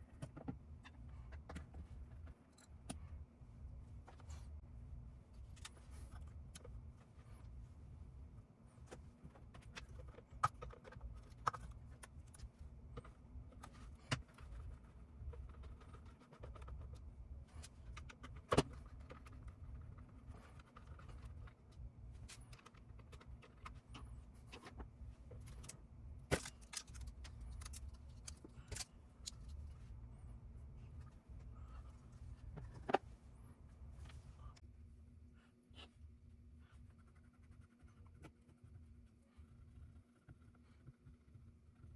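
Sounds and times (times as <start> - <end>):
faint low hum: 0.0 - 41.9
small parts clicking and clinking: 25.4 - 29.6.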